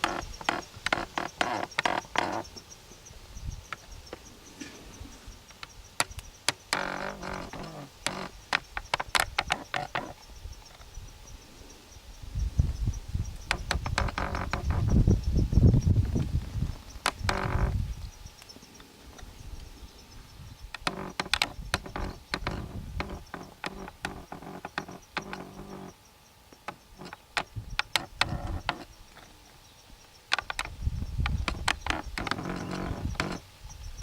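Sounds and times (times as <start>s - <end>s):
tripod joints creaking and clicking: 0.0s - 2.6s, 5.5s - 10.9s, 13.4s - 17.9s, 20.6s - 29.6s, 30.3s - 34.0s.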